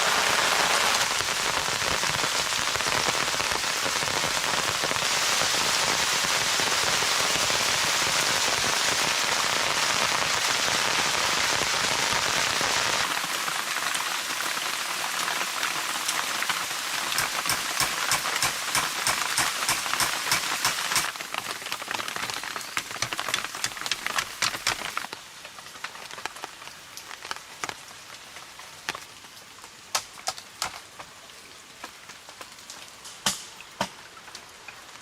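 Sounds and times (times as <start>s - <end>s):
steady rain hissing: 0.0s - 35.0s
raindrops tapping: 15.1s - 35.0s.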